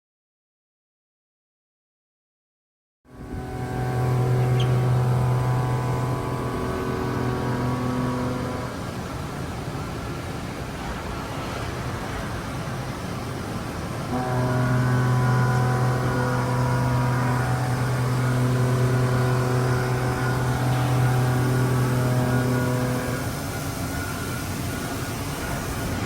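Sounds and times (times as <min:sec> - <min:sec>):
machining center humming: 0:03.1 - 0:10.5, 0:13.8 - 0:26.0.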